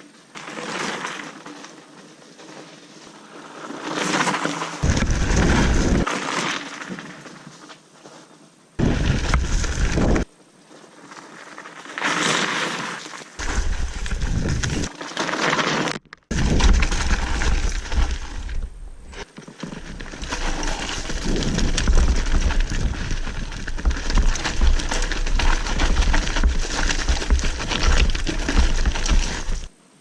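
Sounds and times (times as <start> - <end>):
tyres crunching over dirt and stones: 4.2 - 6.6, 8.8 - 10.3, 13.4 - 29.8
wind rumbling on microphone: 4.8 - 6.1, 8.8 - 10.3, 13.4 - 14.9, 16.3 - 19.2, 20.0 - 29.8
bike frame and chain rattling: 16.3 - 29.7.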